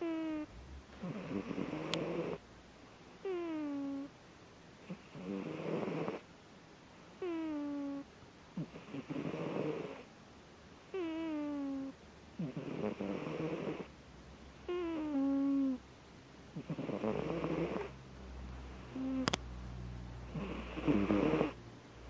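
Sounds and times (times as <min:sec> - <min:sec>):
kitten snoring: 0:00.0 - 0:02.4, 0:03.2 - 0:04.1, 0:04.8 - 0:06.3, 0:07.2 - 0:10.1, 0:10.9 - 0:13.9, 0:14.7 - 0:15.8, 0:16.5 - 0:18.0, 0:18.8 - 0:19.4, 0:20.2 - 0:21.6.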